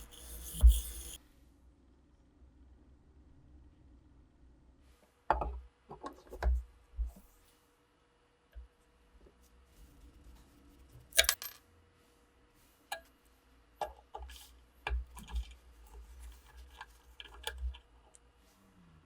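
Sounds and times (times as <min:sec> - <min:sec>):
metal parts clinking: 0:11.2 - 0:11.6.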